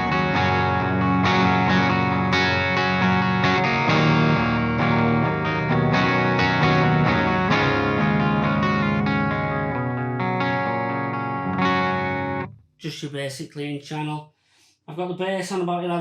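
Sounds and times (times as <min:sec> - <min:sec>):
clean electric guitar chords: 0:00.0 - 0:12.6.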